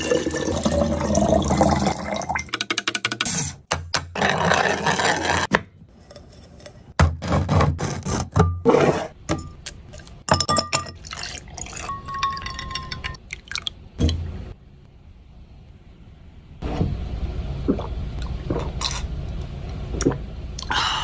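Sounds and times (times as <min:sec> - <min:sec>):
liquid pouring: 0:00.0 - 0:02.5, 0:10.9 - 0:14.2
glassware and utensils clinking: 0:09.3 - 0:13.2.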